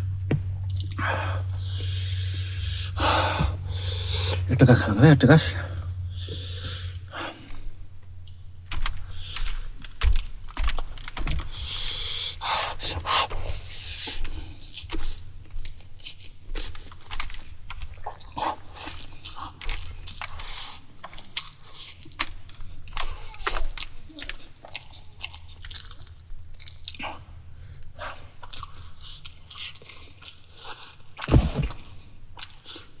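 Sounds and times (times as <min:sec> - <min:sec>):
person chewing: 0:00.2 - 0:02.8, 0:14.2 - 0:27.8, 0:28.4 - 0:32.9.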